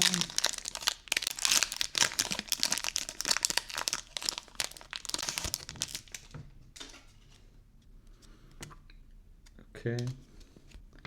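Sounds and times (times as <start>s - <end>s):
foil wrapper tearing and crinkling: 0.0s - 6.3s.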